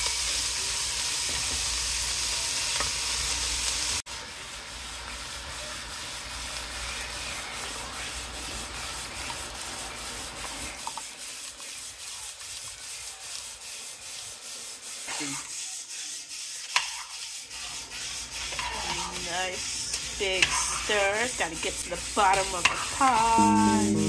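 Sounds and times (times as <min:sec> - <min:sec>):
spoon scraping a cooking pot: 0:14.8 - 0:24.0.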